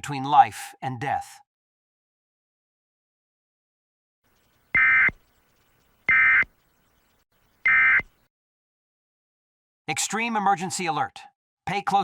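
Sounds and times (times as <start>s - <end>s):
shrill data tone bursts: 4.7s - 5.2s, 6.1s - 6.5s, 7.6s - 8.1s.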